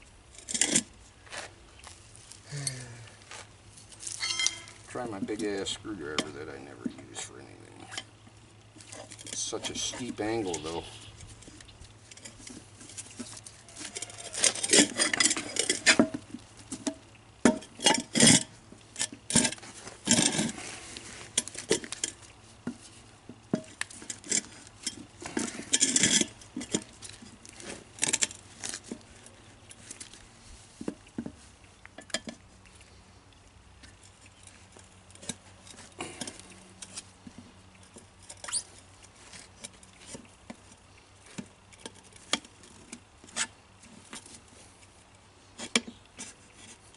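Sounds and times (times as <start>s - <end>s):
metal clinking and scraping: 0.3s - 1.4s, 2.3s - 8.1s, 8.8s - 30.9s.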